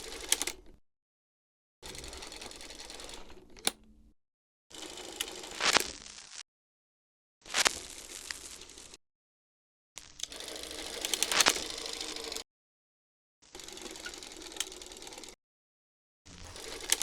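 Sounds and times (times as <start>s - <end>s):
film projector rattle: 4.7s - 5.7s, 13.5s - 15.3s, 16.5s - 17.0s.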